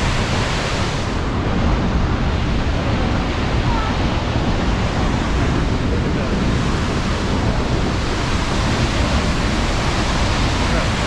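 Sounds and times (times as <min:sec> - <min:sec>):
wind buffeting microphone: 0:00.0 - 0:11.0
waterfall rushing: 0:02.2 - 0:11.0.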